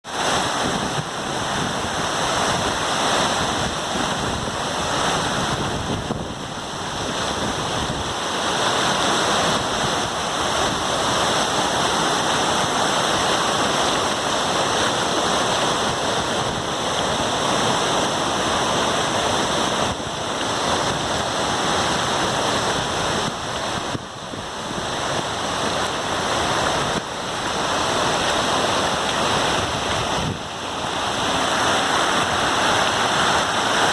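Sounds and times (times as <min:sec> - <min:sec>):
waterfall rushing: 0:00.0 - 0:33.9.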